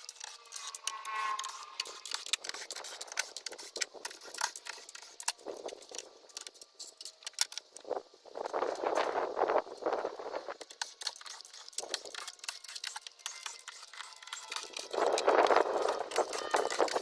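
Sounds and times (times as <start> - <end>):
scraping noise: 0.3 - 5.2.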